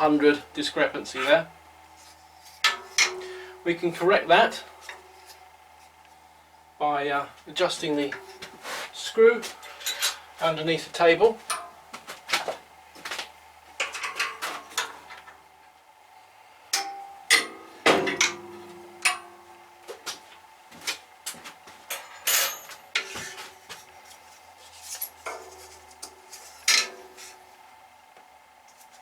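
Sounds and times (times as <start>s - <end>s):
metallic clinks and knocks: 9.6s - 10.2s, 21.8s - 23.4s.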